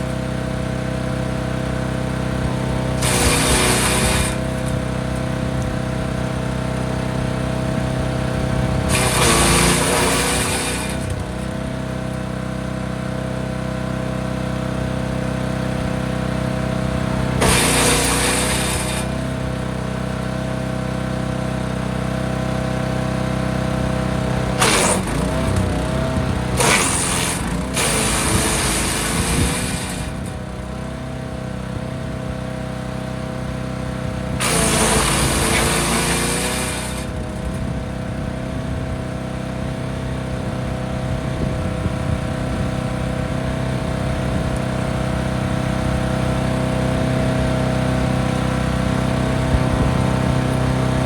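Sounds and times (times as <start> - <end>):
wood chipper running: 0.0 - 51.0
branches being chipped: 3.0 - 4.8, 8.9 - 11.3, 24.6 - 25.8, 26.6 - 30.4, 34.4 - 37.1.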